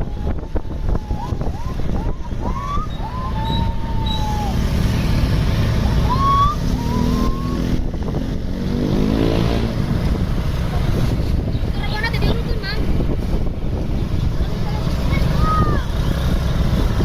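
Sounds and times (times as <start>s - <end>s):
high whistle-like glides: 0.0s - 5.2s, 5.8s - 7.9s
bus engine revving: 0.0s - 17.0s.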